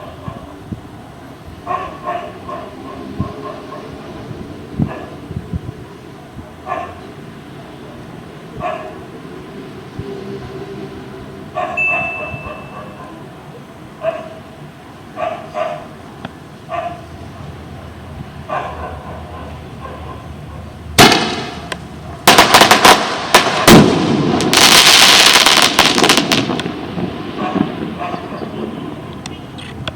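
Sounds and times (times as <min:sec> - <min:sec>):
firework bangs: 0:21.0 - 0:29.2
firework crackling: 0:21.0 - 0:29.9.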